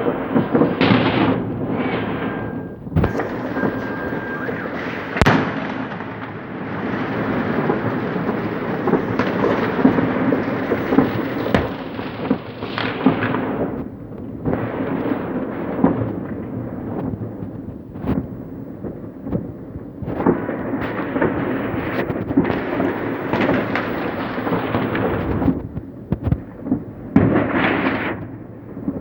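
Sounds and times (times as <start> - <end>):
loud firework bang: 0.0 - 13.7, 20.0 - 29.0
fireworks bangs and crackles: 0.0 - 29.0.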